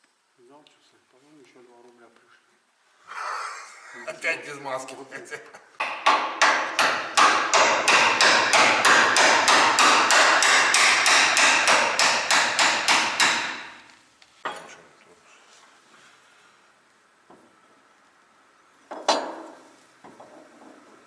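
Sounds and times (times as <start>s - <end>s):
hammer striking metal: 5.8s - 13.8s.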